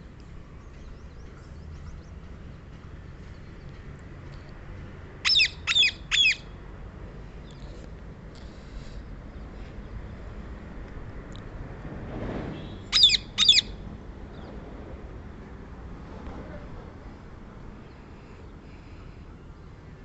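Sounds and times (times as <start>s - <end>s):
parakeet calls: 5.2s - 6.5s, 12.9s - 13.8s
faint bird chirps: 13.0s - 13.7s.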